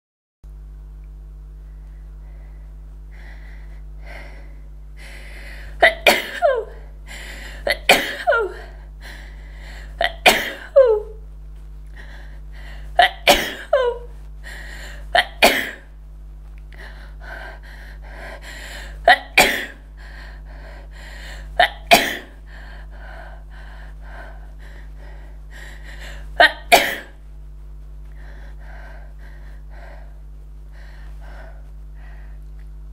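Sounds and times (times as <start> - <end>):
faint breaths: 1.6 - 5.8, 6.7 - 7.7, 8.5 - 10.0, 11.6 - 13.0, 14.1 - 15.2, 19.8 - 21.6, 22.4 - 26.4, 27.6 - 32.6
person sneezing hard: 5.8 - 6.8, 7.7 - 8.6, 10.0 - 11.0, 13.0 - 14.1, 15.2 - 15.9, 19.0 - 19.8, 21.6 - 22.4, 26.4 - 27.2.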